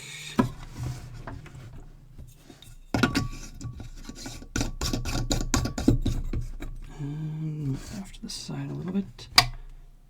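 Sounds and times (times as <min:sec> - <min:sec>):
objects rubbing on workbench: 0:00.1 - 0:06.8
clicks and knocks: 0:08.9 - 0:09.8.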